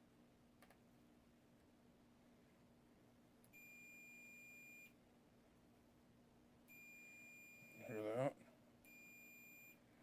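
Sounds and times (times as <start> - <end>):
faint steady hum: 0.0 - 10.0
faint click: 0.6 - 0.8.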